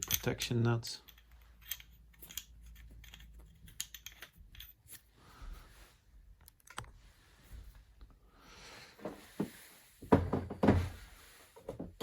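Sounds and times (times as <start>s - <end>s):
metal accessories clicking and tapping: 0.0s - 4.8s.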